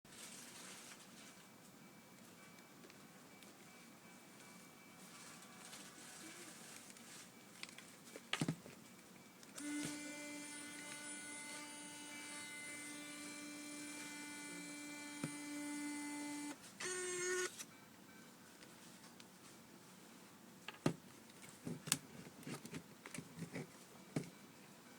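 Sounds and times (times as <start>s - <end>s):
camera lens motor whirring: 9.6s - 17.6s.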